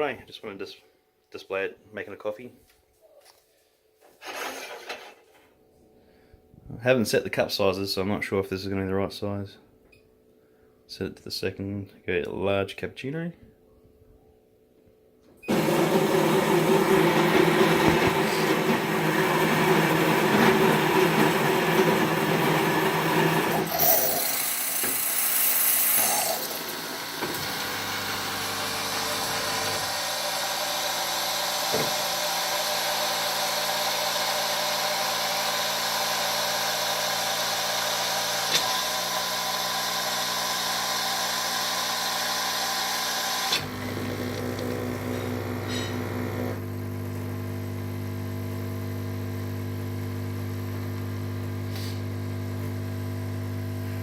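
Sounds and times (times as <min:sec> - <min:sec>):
pump humming: 0:15.4 - 0:54.0
coffee bean grinder buzzing: 0:15.5 - 0:54.0
short hiss: 0:51.7 - 0:52.0.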